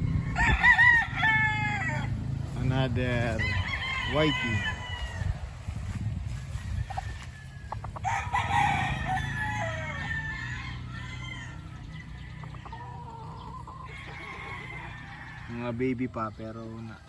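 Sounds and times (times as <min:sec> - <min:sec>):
low rumble: 0:00.0 - 0:13.8
rooster crowing: 0:00.1 - 0:02.2, 0:03.3 - 0:05.5, 0:06.8 - 0:15.5.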